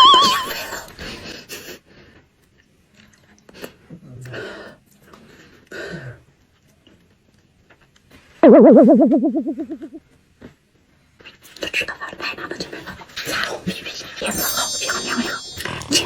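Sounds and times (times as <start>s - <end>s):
warbling cartoon sound effect: 8.4s - 10.0s.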